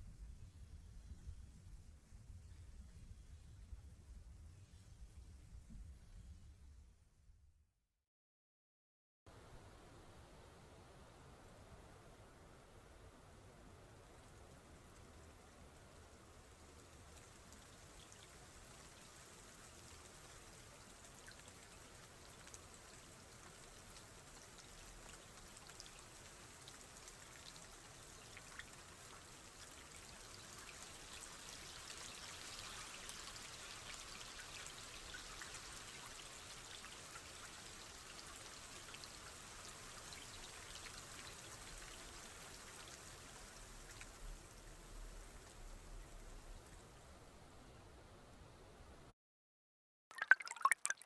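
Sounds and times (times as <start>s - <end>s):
rain drops ticking: 13.7s - 31.7s, 32.5s - 47.6s.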